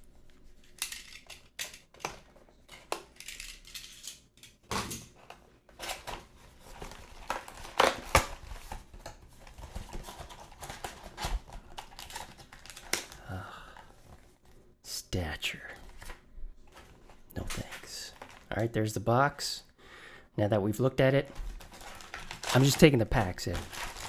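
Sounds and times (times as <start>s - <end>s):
cardboard packaging rustling: 5.1s - 13.2s, 15.9s - 18.6s, 21.2s - 24.0s.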